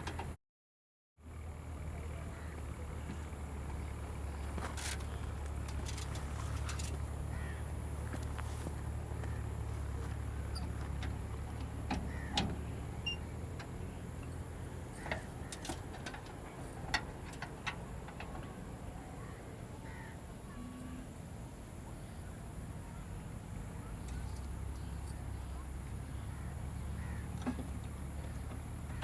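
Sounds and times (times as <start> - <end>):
car engine rumbling: 1.2 - 29.0.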